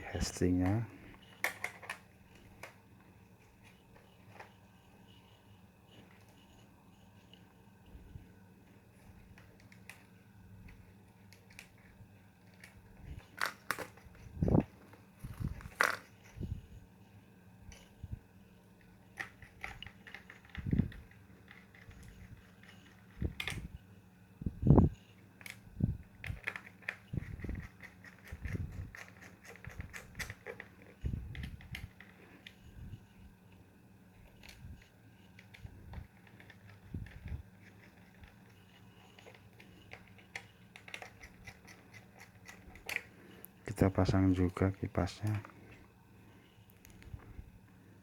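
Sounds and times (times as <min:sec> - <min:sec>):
steady low hum: 0:00.0 - 0:48.0
laptop parts clicking: 0:00.7 - 0:02.8.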